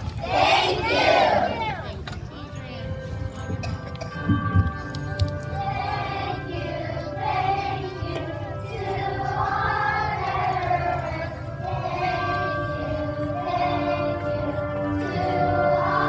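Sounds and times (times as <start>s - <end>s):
group of voices singing: 5.6s - 16.0s.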